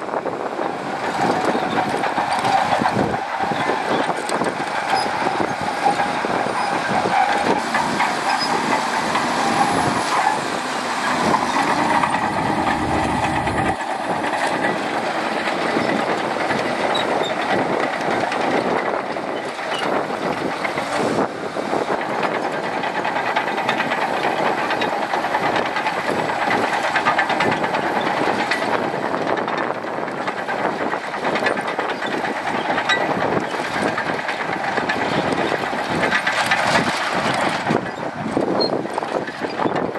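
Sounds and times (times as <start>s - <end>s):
diesel engine running: 0.1s - 32.6s
steel tracks clattering: 0.1s - 39.9s.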